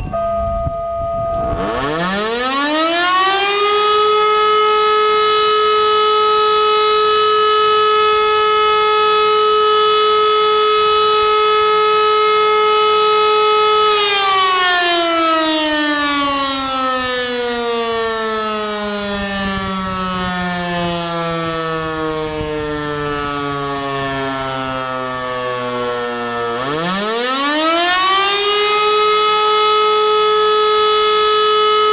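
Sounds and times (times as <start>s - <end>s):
civil defence siren winding: 0.0s - 31.9s.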